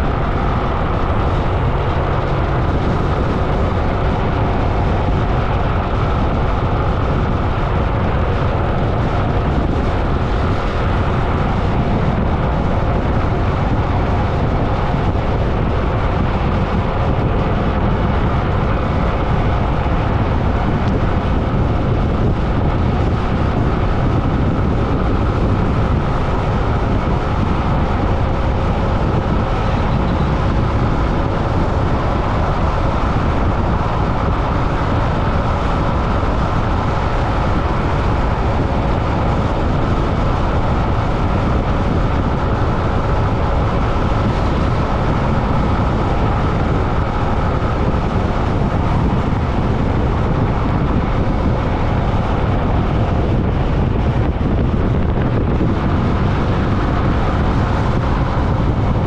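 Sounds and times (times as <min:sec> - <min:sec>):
vehicle road noise rumble: 0:00.0 - 0:59.0.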